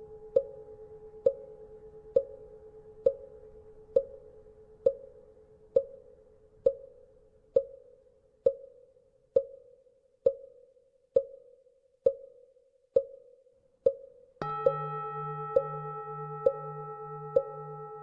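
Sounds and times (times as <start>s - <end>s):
temple bell hum: 14.4s - 18.0s.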